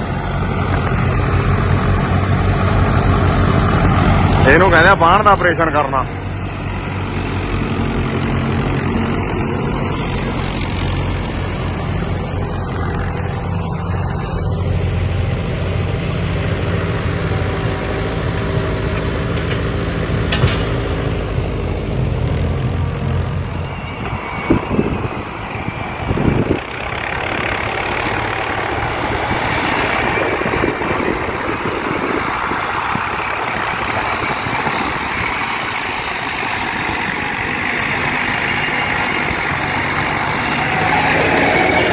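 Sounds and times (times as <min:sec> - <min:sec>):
tractor engine running: 0:00.0 - 0:41.9
engine knocks: 0:17.8 - 0:41.9.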